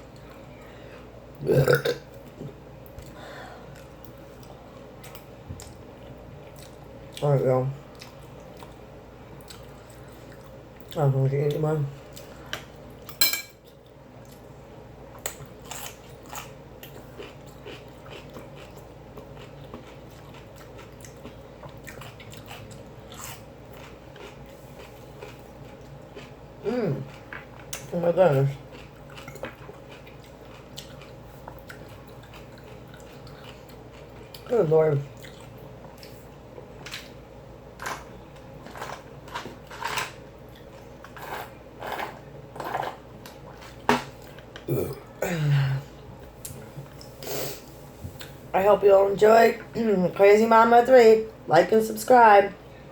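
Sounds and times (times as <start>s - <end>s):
person chewing: 9.4s - 11.0s, 15.1s - 27.9s, 28.6s - 34.5s, 35.1s - 37.1s.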